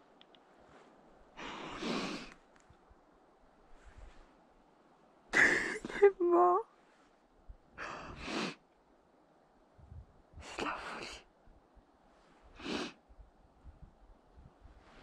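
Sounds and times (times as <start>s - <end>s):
person breathing noisily: 1.3s - 2.4s, 7.8s - 8.6s.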